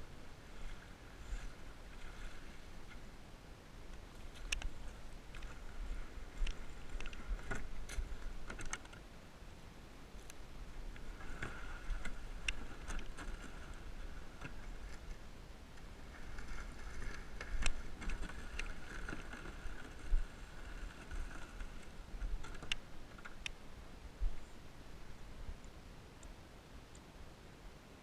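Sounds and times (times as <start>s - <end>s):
paddle strokes in water: 0.0s - 9.0s, 10.8s - 23.4s.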